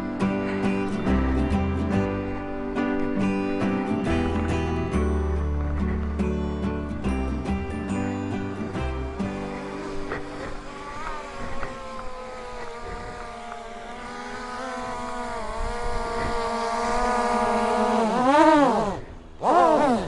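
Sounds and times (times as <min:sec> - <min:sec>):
motorcycle engine revving: 0:06.9 - 0:20.0.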